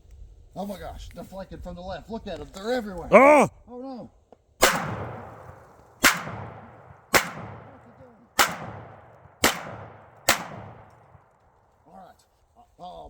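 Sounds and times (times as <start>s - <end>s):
gunshots with long echo: 8.4s - 11.2s.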